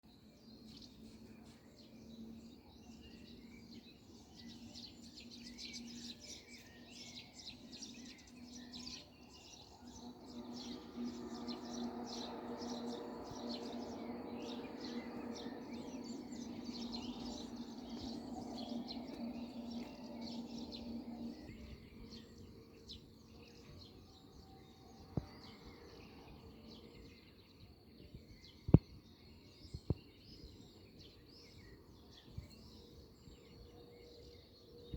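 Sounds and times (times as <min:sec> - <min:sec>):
songbirds chirping: 0:00.0 - 0:34.9.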